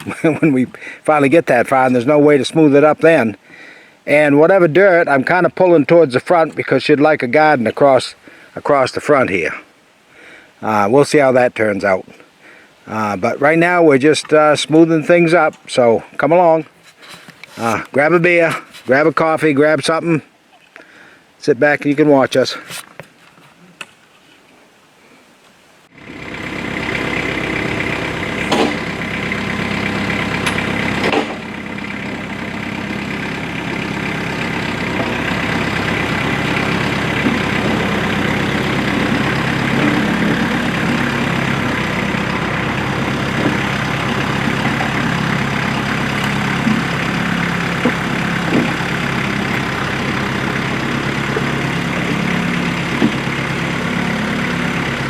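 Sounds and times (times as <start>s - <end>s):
tractor diesel engine running: 0.0s - 8.8s, 25.9s - 55.0s
sharp knocks: 28.4s - 28.9s, 30.4s - 31.5s.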